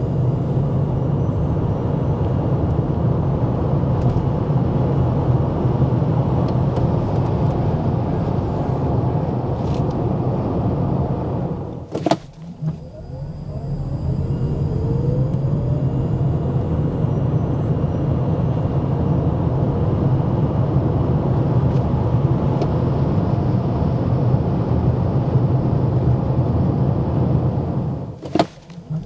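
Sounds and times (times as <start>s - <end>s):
road and tyre rumble: 0.0s - 29.0s
electric drive whine: 6.6s - 20.7s.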